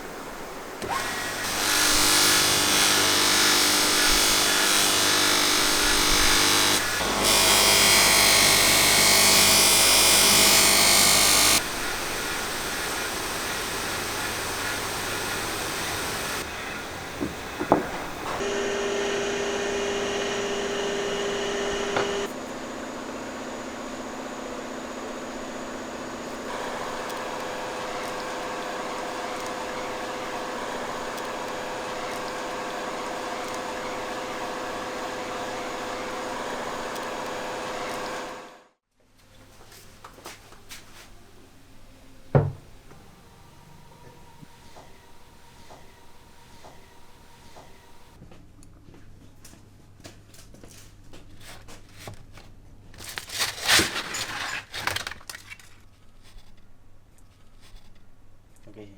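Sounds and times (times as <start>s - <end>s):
workshop machines humming: 0.0s - 38.6s, 41.2s - 48.2s.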